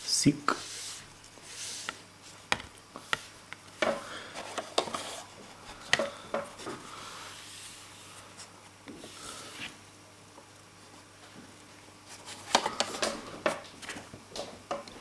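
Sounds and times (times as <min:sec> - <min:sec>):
rubbing of small objects: 0:00.5 - 0:02.4.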